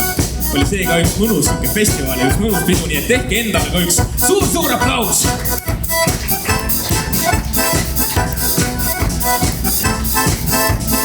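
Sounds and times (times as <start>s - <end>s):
bass: 0.0s - 11.0s
drum kit steady beat: 0.0s - 11.0s
keyboard: 0.0s - 11.0s.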